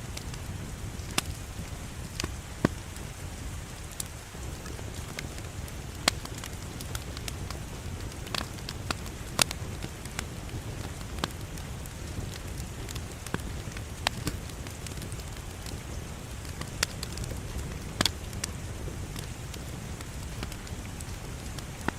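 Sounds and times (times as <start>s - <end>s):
fire crackles and pops: 0.0s - 21.9s
low rumble of flames: 0.0s - 21.9s.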